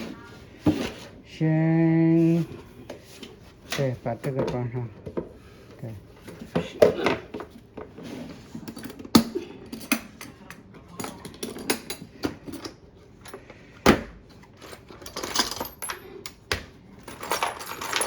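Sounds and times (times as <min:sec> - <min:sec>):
metal parts clinking and knocking: 0:14.6 - 0:16.4, 0:17.0 - 0:18.0.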